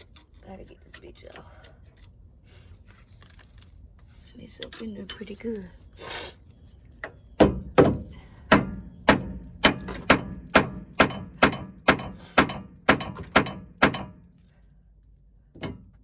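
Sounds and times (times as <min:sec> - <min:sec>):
hammer striking metal: 0:07.4 - 0:14.3.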